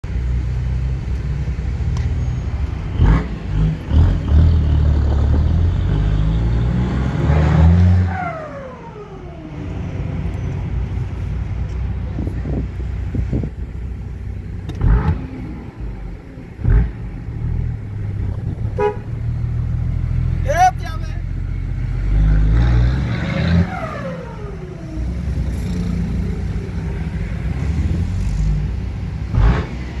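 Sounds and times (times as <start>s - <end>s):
pickup engine idling and revving: 0.0s - 30.0s
pickup engine idle rumble: 10.2s - 19.9s
engine quick rev: 29.3s - 30.0s.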